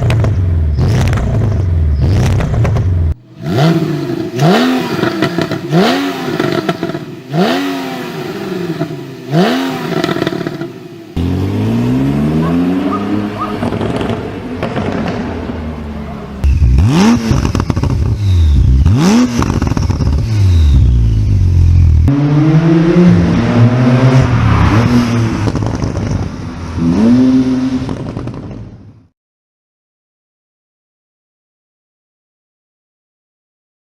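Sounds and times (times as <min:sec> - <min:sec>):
exhaust pops and crackles: 0:00.0 - 0:03.0, 0:13.6 - 0:15.2, 0:16.4 - 0:20.4, 0:25.4 - 0:26.3, 0:27.8 - 0:28.7
car engine revving: 0:00.0 - 0:28.8.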